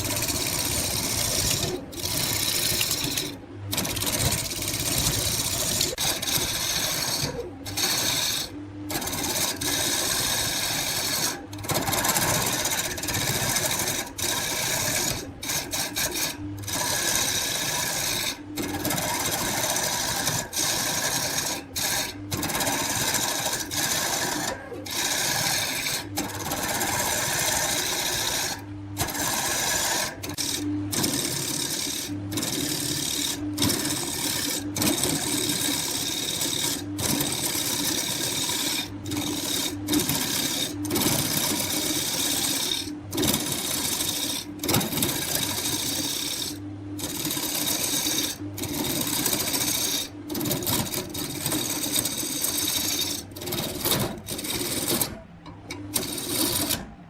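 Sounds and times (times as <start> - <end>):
turning tool scraping wood: 0.0 - 57.0
wood lathe motor hum: 0.0 - 57.0.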